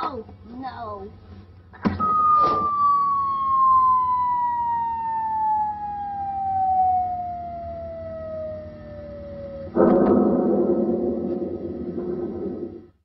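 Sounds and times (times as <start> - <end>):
falling whistle: 2.0 - 9.8.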